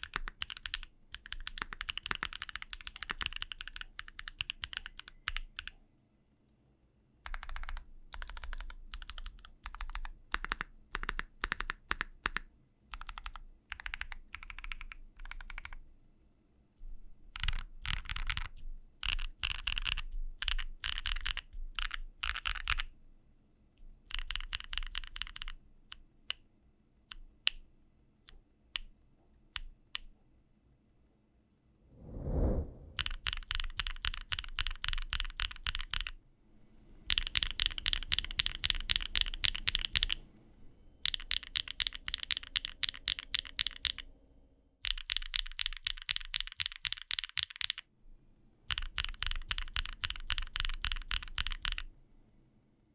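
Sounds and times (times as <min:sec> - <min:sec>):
typing on mechanical keyboard: 0:00.0 - 0:05.7, 0:07.3 - 0:15.8, 0:17.3 - 0:22.9, 0:24.1 - 0:25.6, 0:33.0 - 0:36.2, 0:37.1 - 0:40.2, 0:41.0 - 0:44.0, 0:44.8 - 0:47.8, 0:48.7 - 0:51.9.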